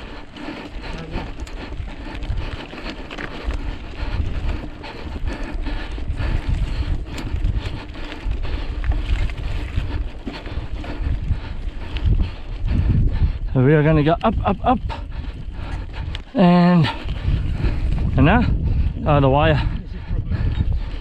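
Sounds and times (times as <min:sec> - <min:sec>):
bike rattles and knocks: 0:00.0 - 0:11.4
wind buffeting microphone: 0:00.0 - 0:21.0.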